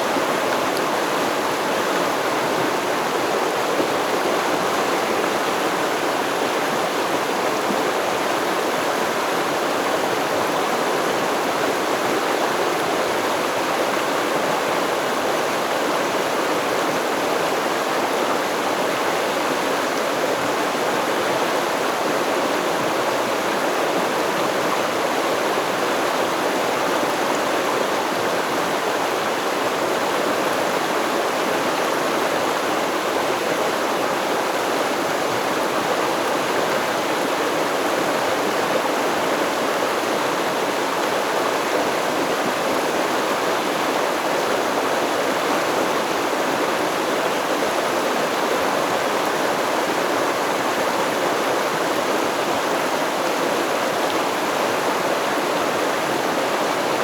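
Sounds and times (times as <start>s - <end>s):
stream water babbling: 0.0s - 57.0s.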